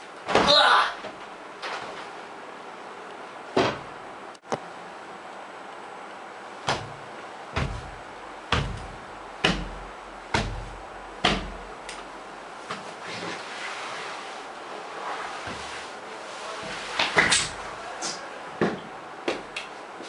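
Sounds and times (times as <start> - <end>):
heavy thuds: 3.5 - 4.0, 6.6 - 11.8.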